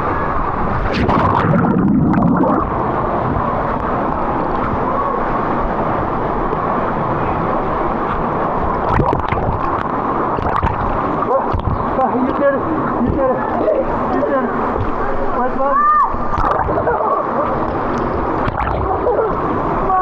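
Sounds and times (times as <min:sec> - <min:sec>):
sharp water splashes: 0:00.9 - 0:02.8, 0:08.7 - 0:12.0, 0:16.2 - 0:19.9.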